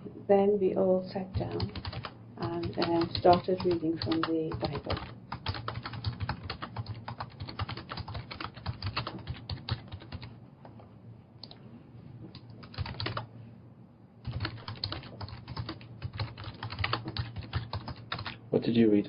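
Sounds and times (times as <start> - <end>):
low steady hum: 0.0 - 19.0
typing on computer keyboard: 1.3 - 10.3, 12.3 - 13.3, 14.2 - 18.4.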